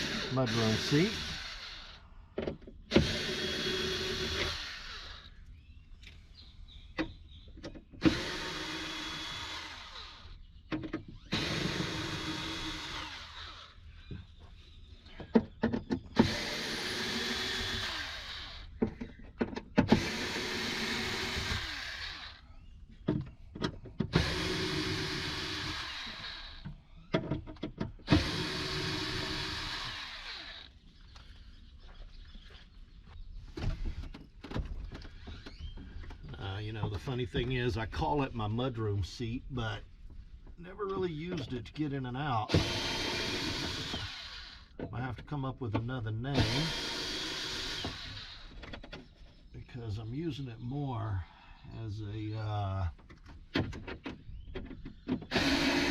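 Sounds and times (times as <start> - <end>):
screw gun motor whine: 0.0 - 2.0, 2.9 - 5.3, 8.0 - 10.4, 11.2 - 13.8, 16.2 - 18.8, 19.9 - 22.4, 24.1 - 27.2, 28.1 - 30.8, 42.5 - 44.8, 46.4 - 48.8, 55.3 - 55.9
clicks and handling knocks: 18.8 - 20.0.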